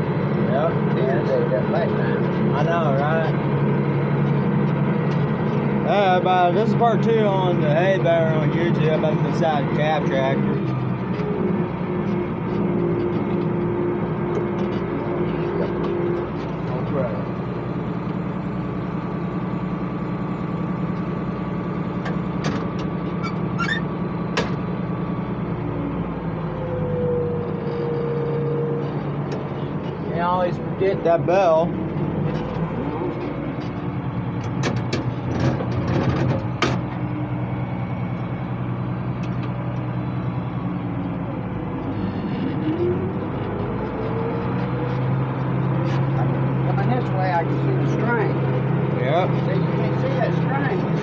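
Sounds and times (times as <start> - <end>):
tractor engine running: 0.0 - 51.0
sharp clicks and knocks: 24.4 - 24.6, 34.4 - 37.0.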